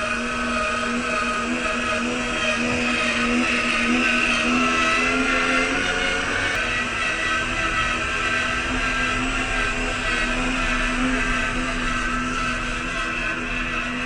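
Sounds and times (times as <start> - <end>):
toy car electric motor whining: 0.0 - 14.0.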